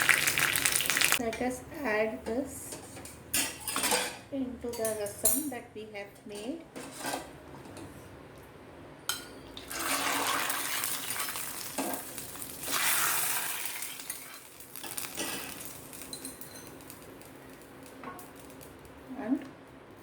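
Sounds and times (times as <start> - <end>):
hot oil sizzling: 0.0 - 1.2, 9.6 - 19.1.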